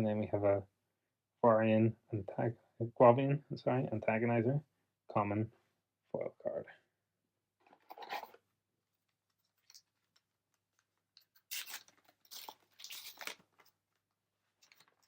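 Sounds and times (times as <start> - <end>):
foil pack tearing open: 11.5 - 13.6.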